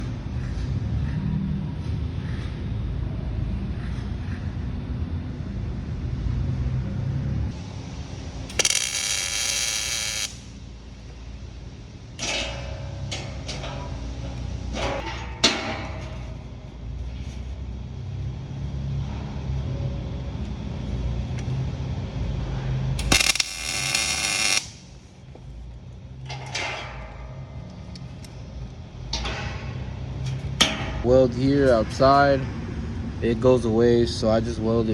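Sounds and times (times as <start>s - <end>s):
steady low hum: 0.0s - 34.6s
welding arc crackling: 8.5s - 10.6s, 23.0s - 24.9s.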